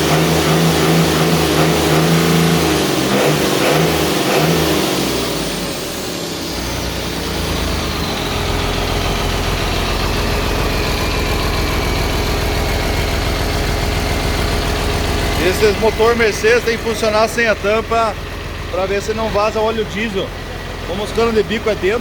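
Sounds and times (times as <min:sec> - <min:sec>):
diesel engine idling: 0:00.0 - 0:22.0
high whine: 0:05.3 - 0:22.0.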